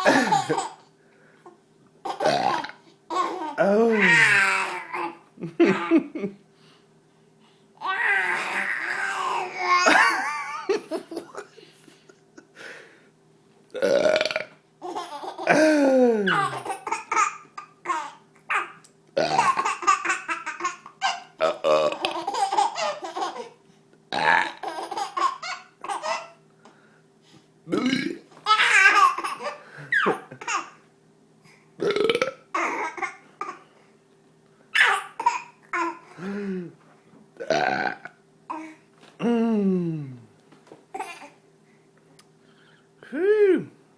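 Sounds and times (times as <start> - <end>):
baby laughing: 0.0 - 0.9, 2.0 - 6.2, 7.8 - 11.4, 14.8 - 18.8, 19.4 - 21.4, 22.0 - 23.6, 24.5 - 26.4, 28.4 - 30.8, 34.8 - 36.1
man burping loudly: 2.2 - 2.8, 13.8 - 14.6, 15.5 - 16.7, 19.2 - 19.6, 21.4 - 22.2, 24.1 - 24.6, 27.7 - 28.3, 31.8 - 32.4, 37.4 - 38.2.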